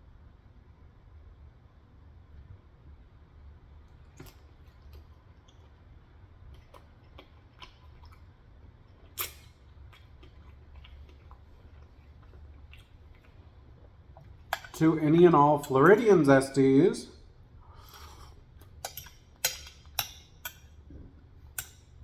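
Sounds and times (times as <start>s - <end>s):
low steady hum: 0.0s - 22.0s
person chewing: 3.9s - 16.1s, 17.7s - 22.0s
wet mouth clicks: 6.5s - 8.3s, 8.9s - 13.5s, 14.2s - 14.9s, 18.0s - 20.7s.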